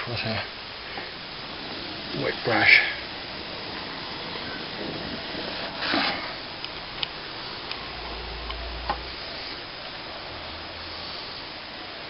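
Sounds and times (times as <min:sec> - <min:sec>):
tool scraping cement: 0:04.8 - 0:06.4.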